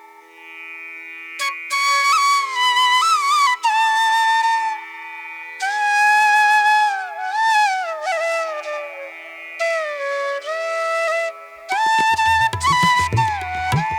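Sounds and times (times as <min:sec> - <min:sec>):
solo flute melody: 0:01.4 - 0:13.9.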